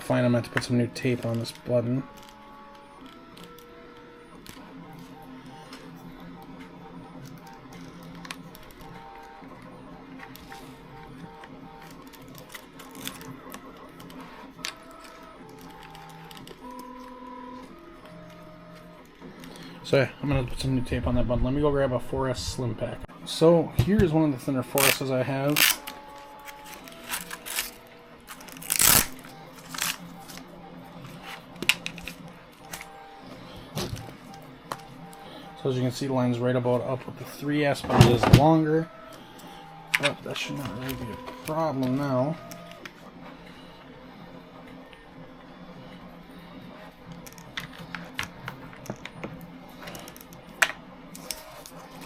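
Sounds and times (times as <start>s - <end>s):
hands handling battery pack: 24.8s - 32.9s.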